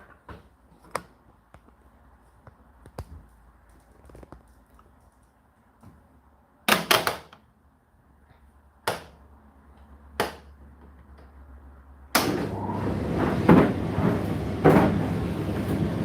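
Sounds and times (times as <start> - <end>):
knocks and clicks handling dryer: 12.2 - 16.0
tumble dryer running: 12.2 - 16.0.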